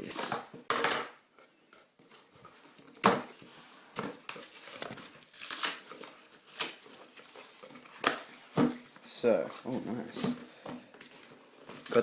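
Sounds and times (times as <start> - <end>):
packaging crinkling and rustling: 2.1 - 12.0
packaging tearing: 4.3 - 7.3.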